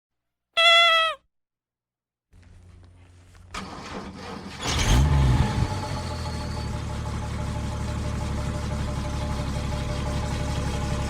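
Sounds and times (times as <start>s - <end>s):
short loud tone: 0.6s - 1.2s
diesel truck engine cranking: 3.5s - 6.8s.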